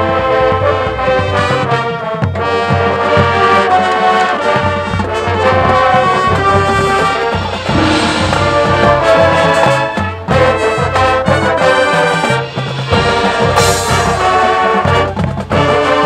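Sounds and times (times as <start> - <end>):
brass chords: 5.8 - 9.6
low drum hits: 7.2 - 9.5.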